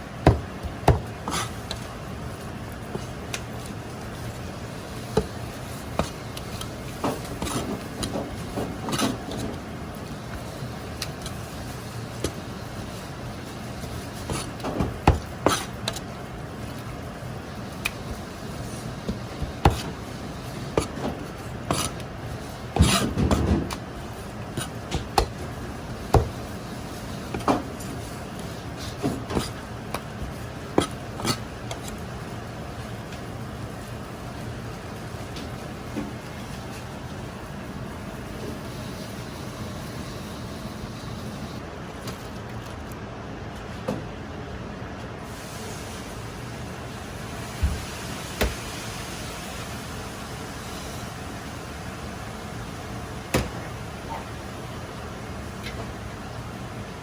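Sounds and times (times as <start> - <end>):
steady low hum: 0.0 - 45.2.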